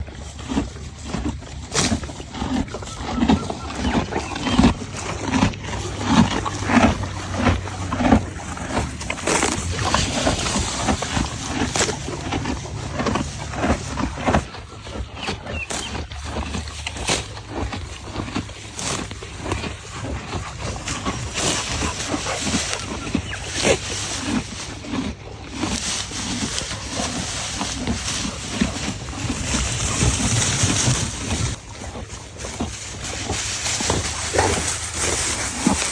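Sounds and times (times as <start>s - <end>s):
horses chewing feed: 0.0s - 35.9s.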